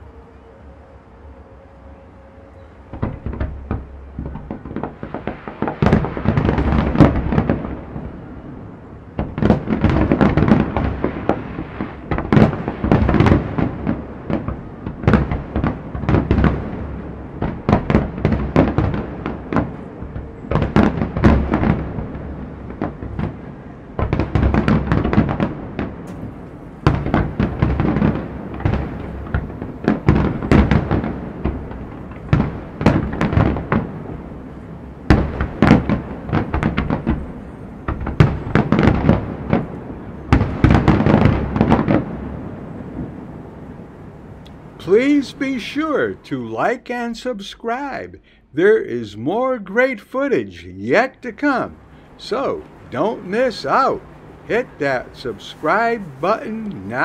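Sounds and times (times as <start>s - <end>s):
fireworks bangs and crackles: 2.9s - 57.0s.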